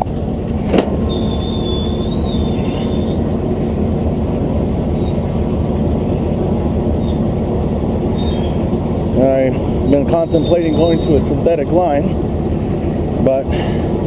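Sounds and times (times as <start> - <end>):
heavy vehicle engine idling: 0.0 - 14.0.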